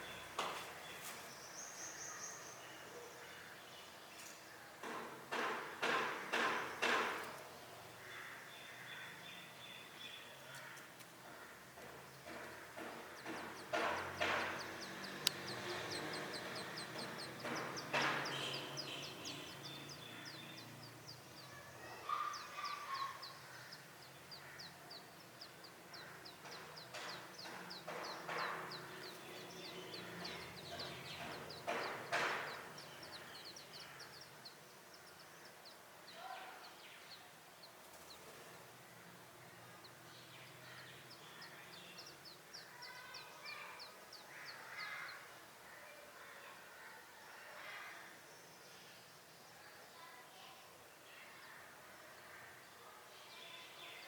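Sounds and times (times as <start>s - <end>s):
nestlings peeping: 4.2s - 45.4s
harsh bird calls: 7.9s - 45.9s.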